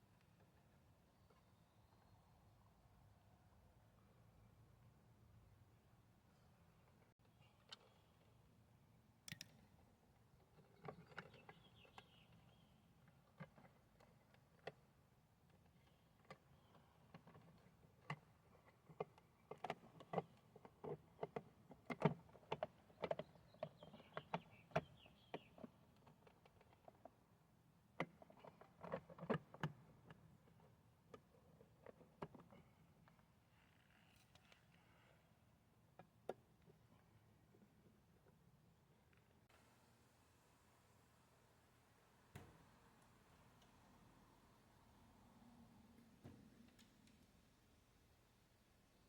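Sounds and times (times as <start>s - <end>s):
light clicks and taps of tools: 9.2s - 9.8s, 28.0s - 35.2s.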